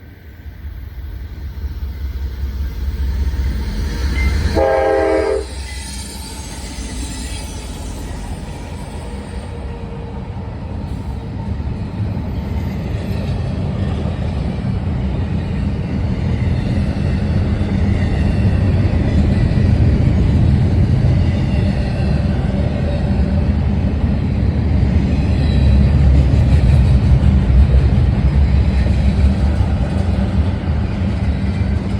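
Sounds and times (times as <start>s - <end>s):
train horn blast: 4.4s - 5.7s.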